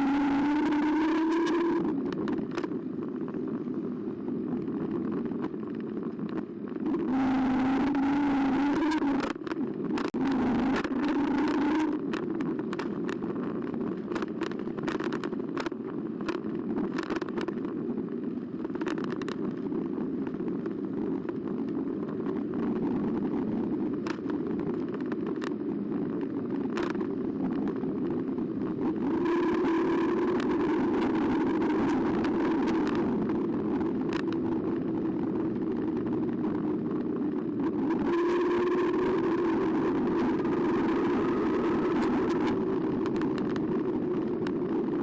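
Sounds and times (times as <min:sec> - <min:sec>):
tyres and wind rumble: 0:00.0 - 0:45.0
bike clicks and rattles: 0:08.0 - 0:22.6, 0:23.9 - 0:28.6.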